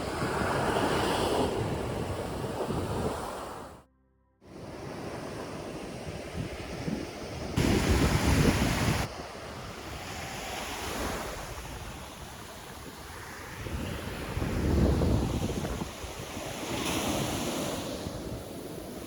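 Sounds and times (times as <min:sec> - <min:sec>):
wind on microphone: 0:00.0 - 0:03.8, 0:04.5 - 0:19.0
surf breaking on shore: 0:04.5 - 0:19.0.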